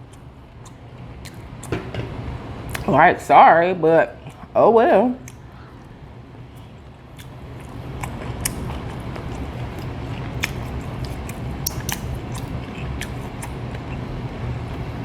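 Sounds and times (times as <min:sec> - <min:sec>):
chewing food with wet mouth clicks: 0:00.0 - 0:01.7, 0:06.6 - 0:14.9.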